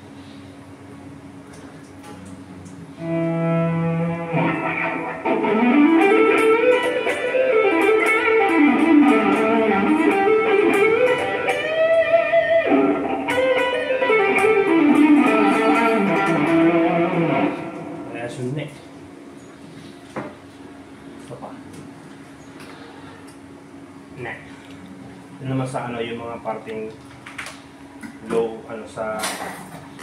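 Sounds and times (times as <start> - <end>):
distorted electric guitar: 2.9 - 18.6.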